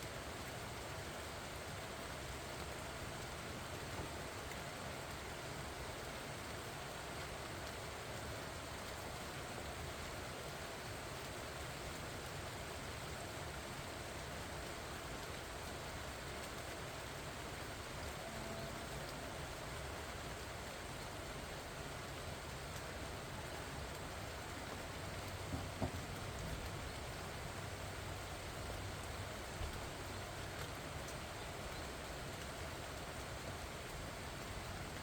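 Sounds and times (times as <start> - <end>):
rain falling on leaves: 0.0 - 35.0.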